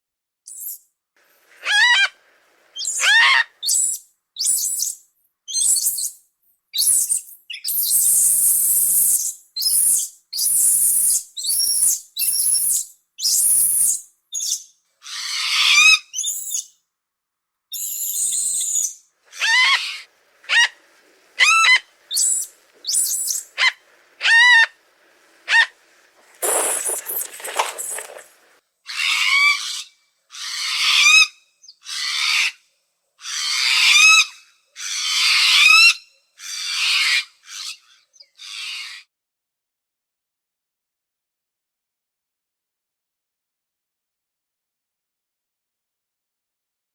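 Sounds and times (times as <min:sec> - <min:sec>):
high bird-like chirps and squeals: 0:02.8 - 0:06.1, 0:06.8 - 0:16.7, 0:17.7 - 0:20.8, 0:21.4 - 0:24.7, 0:26.3 - 0:28.3
hissing shrieks: 0:21.4 - 0:28.3.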